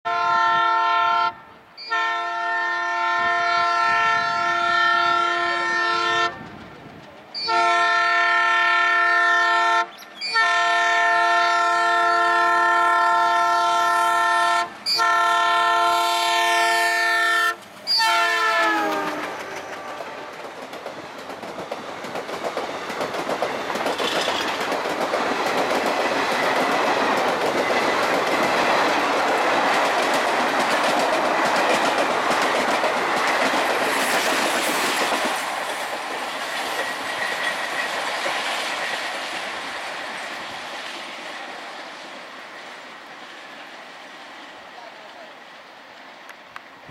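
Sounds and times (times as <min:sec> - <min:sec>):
locomotive horn blasts: 0:00.1 - 0:06.4, 0:07.4 - 0:20.4
train wheels rumbling on rails: 0:02.8 - 0:46.9.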